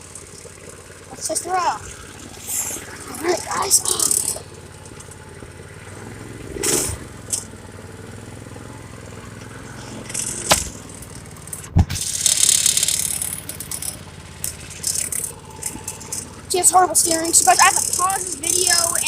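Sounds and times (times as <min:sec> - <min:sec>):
go-kart engine idling: 0:00.0 - 0:19.0
hissing noise: 0:01.8 - 0:04.4
rattling and clattering: 0:09.3 - 0:19.0
loud thump: 0:11.7 - 0:12.0.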